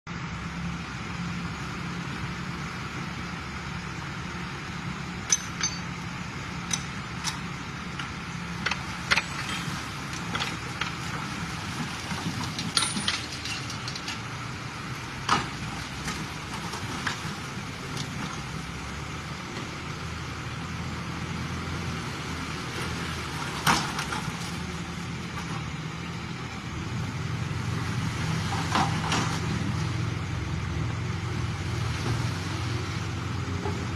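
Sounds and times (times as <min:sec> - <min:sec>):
heavy machinery engine running: 0:00.1 - 0:33.9
metallic clinks and knocks: 0:05.3 - 0:06.0, 0:06.6 - 0:07.4, 0:08.6 - 0:10.6, 0:12.6 - 0:14.2.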